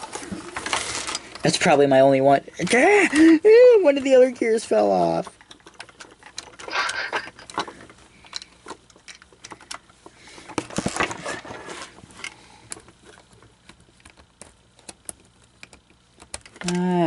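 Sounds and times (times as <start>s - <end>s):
plastic parts clicking and tapping: 5.0s - 11.4s, 12.2s - 17.0s.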